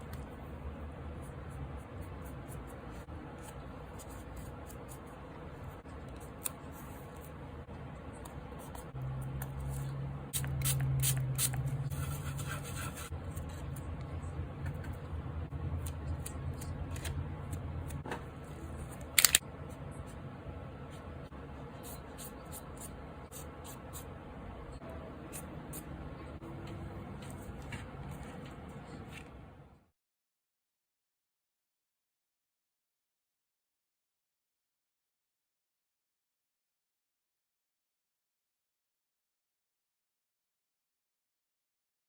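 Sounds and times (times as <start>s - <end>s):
low steady hum: 0.0s - 29.9s.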